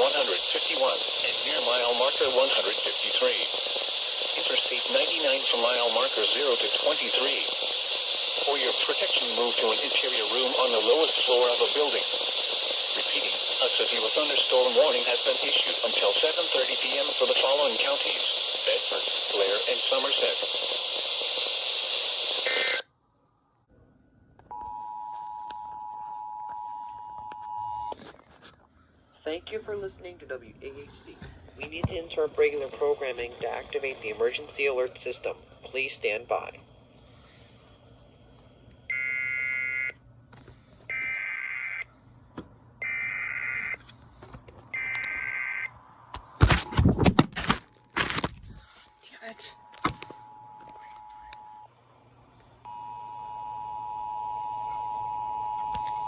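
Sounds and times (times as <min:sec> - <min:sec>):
radio audio: 0:00.0 - 0:22.9, 0:24.5 - 0:38.1, 0:38.9 - 0:51.8.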